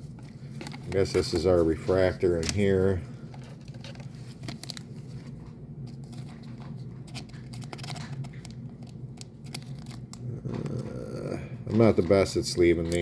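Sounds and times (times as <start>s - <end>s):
low steady hum: 0.0s - 13.0s
plastic sleeve crinkling: 0.0s - 13.0s.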